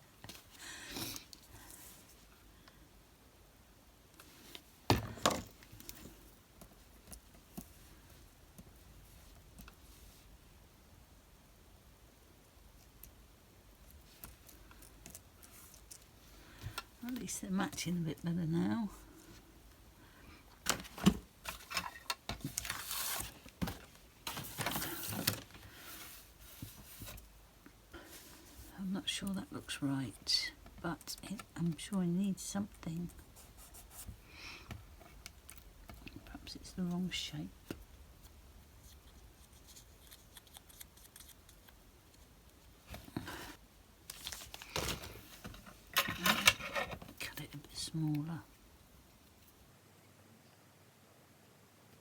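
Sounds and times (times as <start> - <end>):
card rustling and sliding: 20.7 - 27.2.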